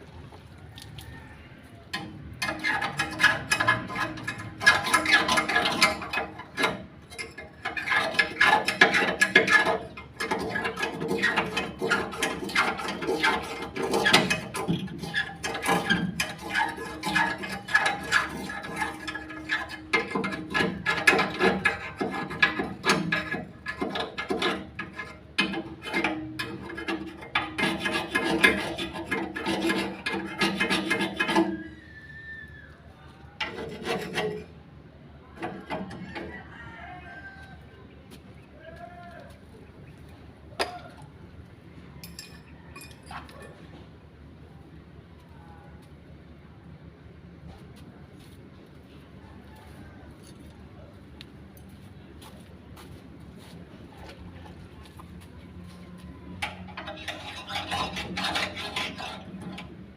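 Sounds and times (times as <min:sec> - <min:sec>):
metal pot being scraped: 0:02.0 - 0:31.9, 0:33.4 - 0:34.6, 0:35.4 - 0:36.4, 0:56.3 - 0:59.9.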